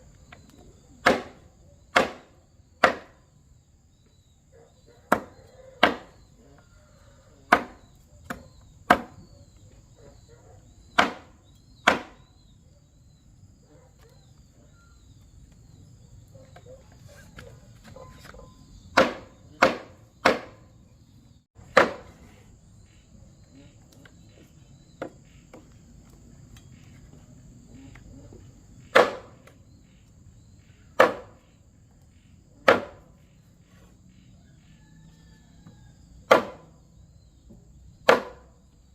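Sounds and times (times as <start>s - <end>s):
sharp chopping strikes: 1.0s - 3.2s, 5.1s - 6.2s, 7.5s - 9.2s, 11.0s - 12.2s, 18.9s - 20.6s, 21.7s - 22.2s, 28.9s - 29.5s, 31.0s - 31.4s, 32.6s - 33.1s, 36.3s - 36.6s, 38.0s - 38.5s.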